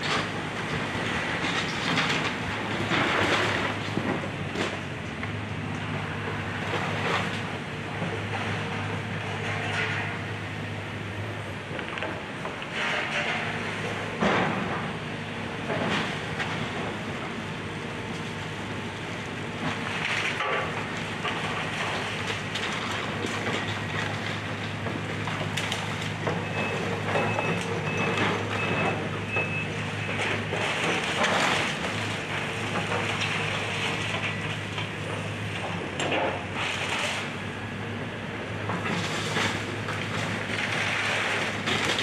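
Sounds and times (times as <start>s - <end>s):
wood and debris crunching: 0.0s - 4.9s, 19.6s - 37.4s, 38.8s - 42.0s
excavator diesel engine running: 0.0s - 42.0s.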